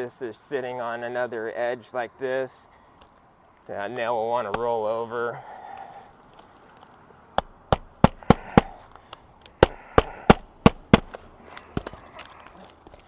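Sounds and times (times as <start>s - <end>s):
hatchet hammering roofing nails: 4.5s - 4.7s, 7.4s - 9.0s, 9.6s - 12.0s.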